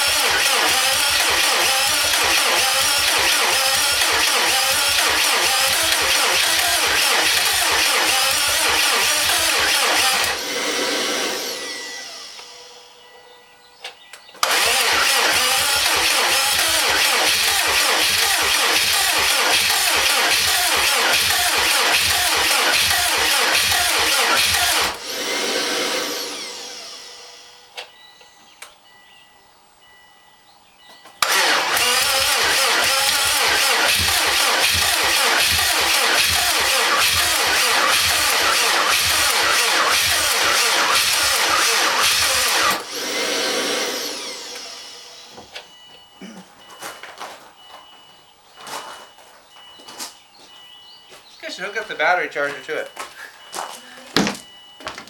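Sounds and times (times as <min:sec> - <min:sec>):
whine winding down: 0:00.0 - 0:13.0, 0:14.4 - 0:27.9, 0:31.2 - 0:45.8
car starter cranking engine: 0:00.0 - 0:27.9, 0:31.2 - 0:47.8.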